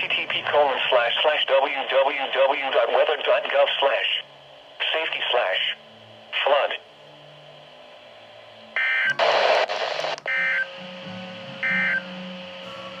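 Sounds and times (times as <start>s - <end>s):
burst of static: 9.1s - 10.5s.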